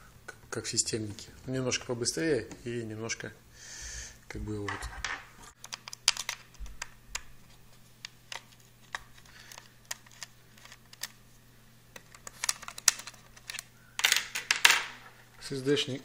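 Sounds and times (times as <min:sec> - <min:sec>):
laptop parts clicking and tapping: 0:05.6 - 0:07.3, 0:08.0 - 0:11.2, 0:12.0 - 0:14.4.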